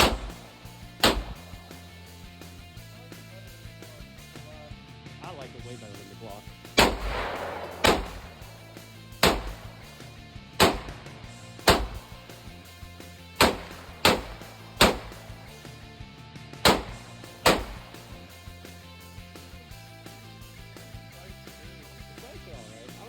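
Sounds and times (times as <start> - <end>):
pistol shots: 0.0 - 1.8, 6.7 - 12.7, 13.4 - 15.7, 16.6 - 18.4
background music: 0.0 - 23.0.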